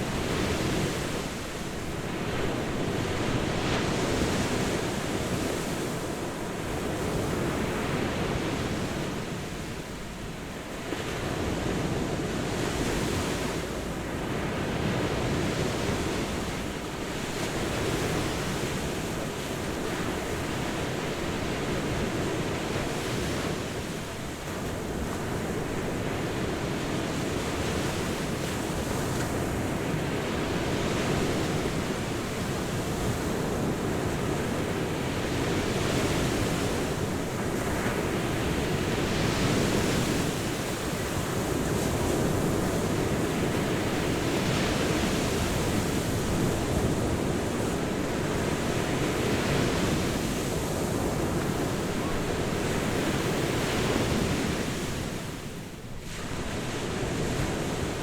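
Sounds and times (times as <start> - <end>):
ocean waves breaking on beach: 0.0 - 58.0.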